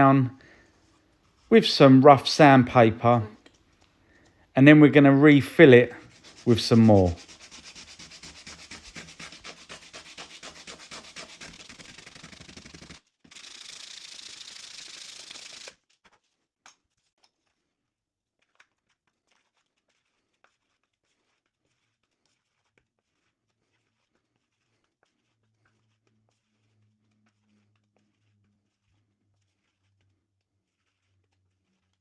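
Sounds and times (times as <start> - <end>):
sandpaper rubbing on filler: 4.8 - 15.7, 19.9 - 25.4, 30.7 - 31.6.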